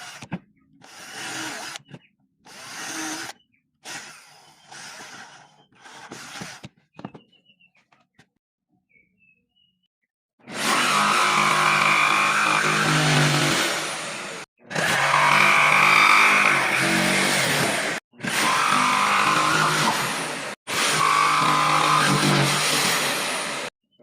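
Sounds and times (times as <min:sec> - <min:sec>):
woodworking power tool whining: 0:00.0 - 0:01.9, 0:10.4 - 0:23.7.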